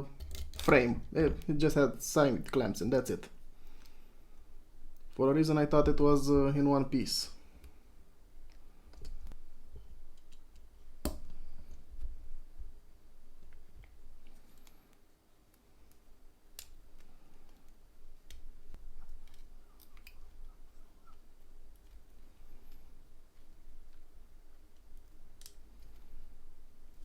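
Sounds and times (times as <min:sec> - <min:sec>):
plastic parts clicking and snapping: 0:00.1 - 0:01.6, 0:10.1 - 0:11.8, 0:15.9 - 0:20.4, 0:21.1 - 0:26.3.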